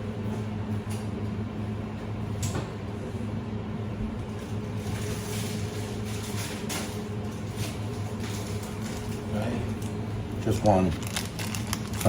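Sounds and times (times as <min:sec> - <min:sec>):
kitchen fan humming: 0:00.0 - 0:12.0.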